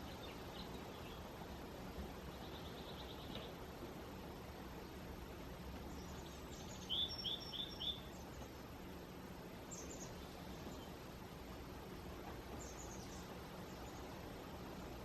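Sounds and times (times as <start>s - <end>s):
outdoor background noise: 0.0s - 15.0s
songbird chirps: 0.0s - 15.0s
faint bird chirps: 2.2s - 3.6s, 5.9s - 8.8s, 9.6s - 11.1s, 12.5s - 14.3s.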